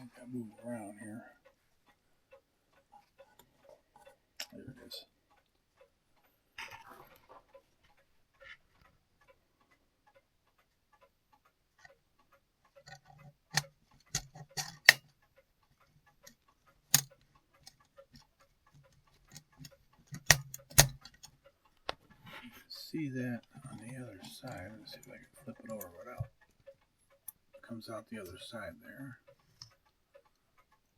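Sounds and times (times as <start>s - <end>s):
sharp metallic clicks: 12.8s - 15.1s, 16.1s - 21.4s.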